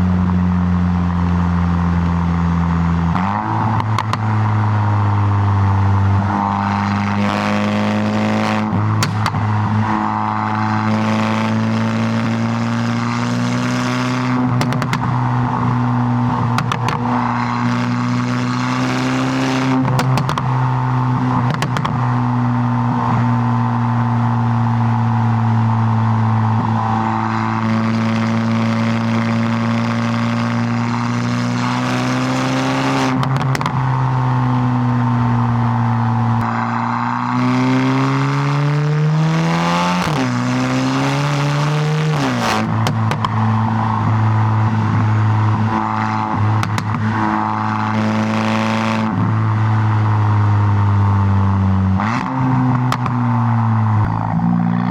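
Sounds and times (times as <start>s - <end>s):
car engine and exhaust driving: 0.0s - 54.9s
sharp knocks: 9.0s - 9.4s, 16.5s - 17.1s, 19.9s - 20.5s.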